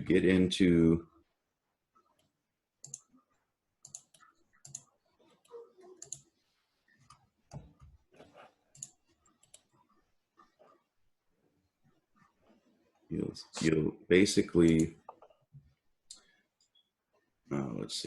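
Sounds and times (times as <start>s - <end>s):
computer mouse clicks: 2.1s - 3.2s, 3.8s - 6.3s, 7.0s - 9.8s.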